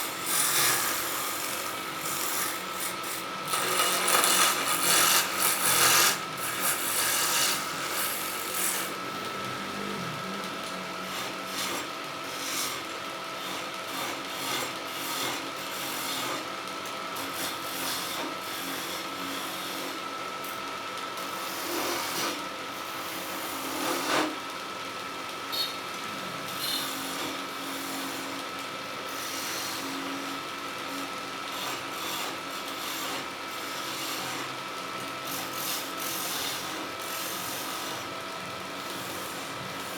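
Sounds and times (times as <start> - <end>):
tool scraping spinning wood: 0.0 - 16.3
wood lathe motor whine: 0.0 - 24.4, 25.0 - 39.9.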